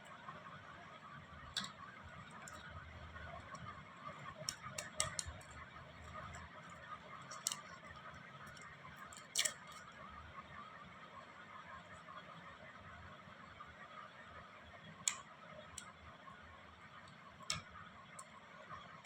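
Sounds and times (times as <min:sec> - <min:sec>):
lollipops clicking and crackling: 0:04.2 - 0:06.4, 0:07.3 - 0:07.8.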